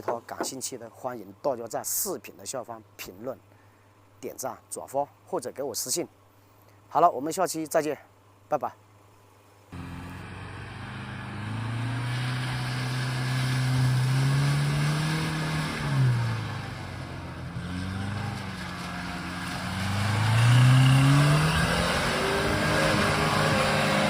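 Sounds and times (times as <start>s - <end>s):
road and tyre noise: 0.0s - 1.1s, 8.2s - 24.0s
car engine accelerating: 9.7s - 24.0s.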